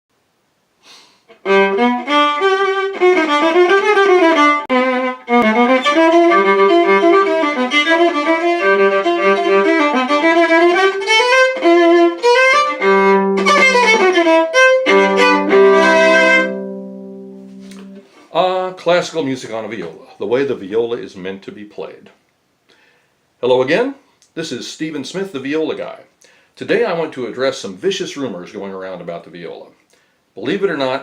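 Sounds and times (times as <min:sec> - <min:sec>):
bowed viola: 0:01.3 - 0:18.1.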